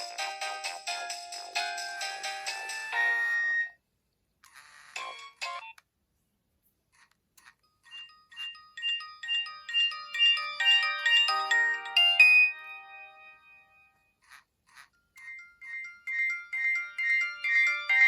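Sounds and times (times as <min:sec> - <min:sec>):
phone ringtone melody: 0:00.0 - 0:03.8, 0:07.7 - 0:14.1, 0:15.2 - 0:18.0.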